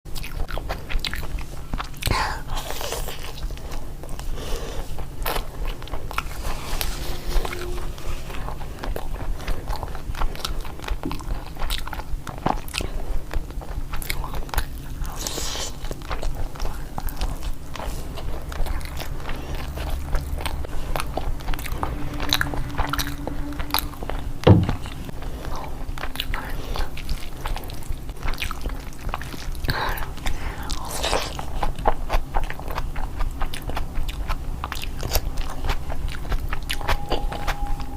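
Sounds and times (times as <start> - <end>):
food crunching: 0.1 - 37.9
person chewing food: 0.1 - 37.9
sharp knock: 24.5 - 24.9.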